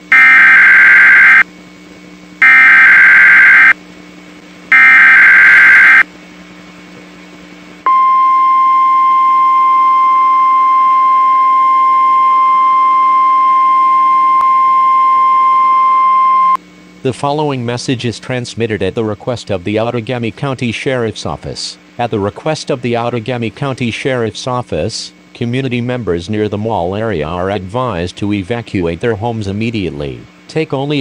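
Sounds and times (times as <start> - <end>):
screeching digital data bursts: 0.1 - 1.4, 2.4 - 3.8, 4.7 - 6.0
steady warning alarm tone: 0.1 - 1.4, 2.4 - 3.8, 4.7 - 6.0.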